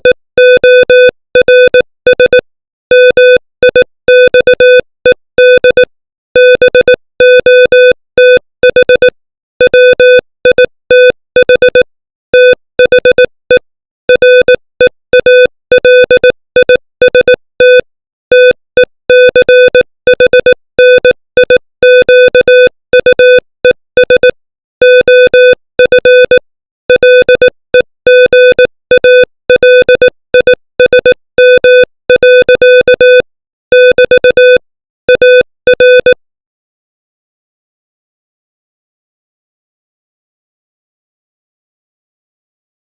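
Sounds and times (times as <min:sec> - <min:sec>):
morse code electronic tone: 0:00.0 - 0:36.2.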